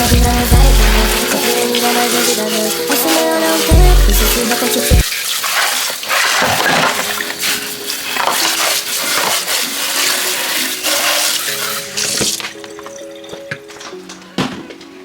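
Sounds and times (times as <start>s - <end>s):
faint background music: 0.0s - 15.0s
tap running into sink: 11.1s - 13.7s.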